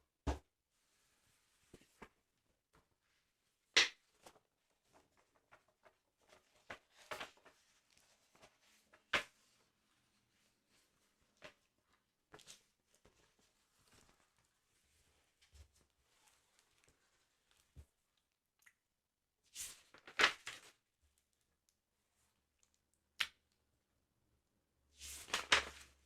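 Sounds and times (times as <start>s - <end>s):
paper and cardboard rustling: 25.0s - 26.0s.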